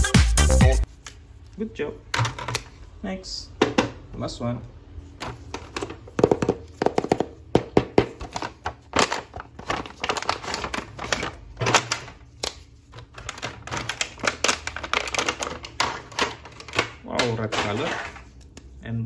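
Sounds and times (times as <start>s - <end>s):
plastic packaging clicks and crinkles: 8.0s - 18.7s.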